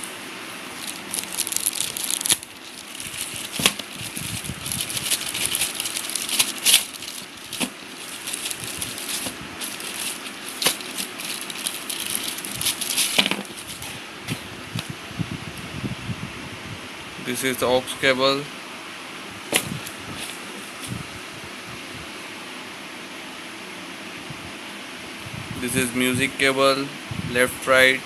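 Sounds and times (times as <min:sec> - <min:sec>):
plastic packaging crinkling: 0:00.7 - 0:14.9.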